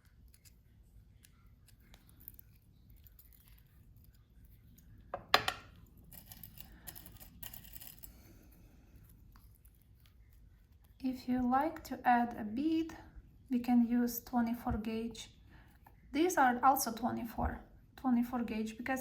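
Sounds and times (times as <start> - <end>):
wire rustling: 0.0 - 11.0
metal tools clicking: 6.1 - 8.2.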